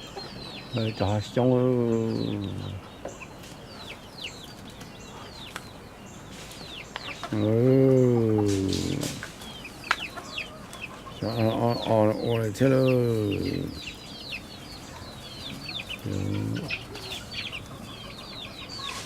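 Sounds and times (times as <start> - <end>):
chickens clucking and peeping: 0.0 - 19.0
man calling: 0.8 - 2.8, 7.3 - 9.3, 11.2 - 13.9, 16.0 - 16.8.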